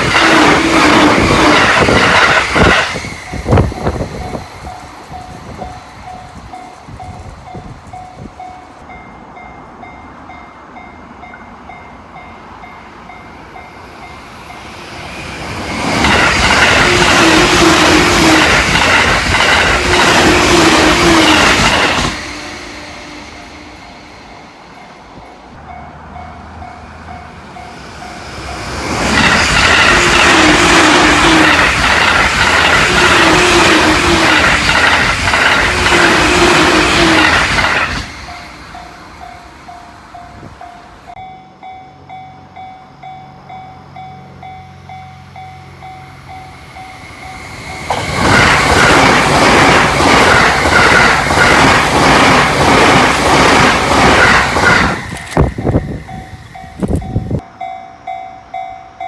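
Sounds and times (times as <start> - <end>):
high-speed train passing: 0.0 - 59.0
level-crossing bell dinging: 3.2 - 15.1, 22.9 - 31.7, 38.2 - 48.0, 55.2 - 59.0.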